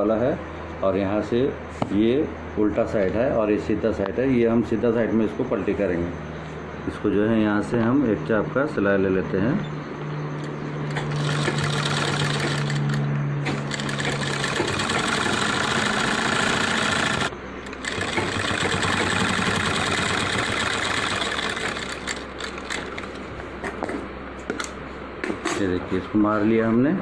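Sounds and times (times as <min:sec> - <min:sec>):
sewing machine running: 0:10.9 - 0:23.2.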